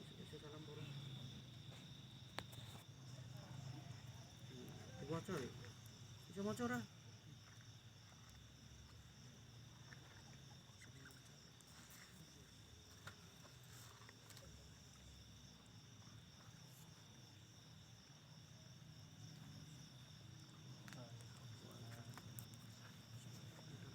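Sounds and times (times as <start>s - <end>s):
crickets chirring: 0.0s - 23.9s
faint ticks: 1.8s - 2.8s.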